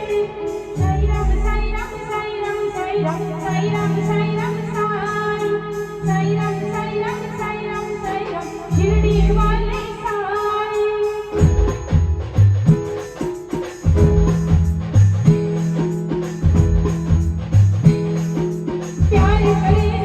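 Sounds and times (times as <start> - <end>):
woman singing: 0.0 - 11.7, 19.0 - 20.0
drums and tambourine beats: 0.0 - 20.0.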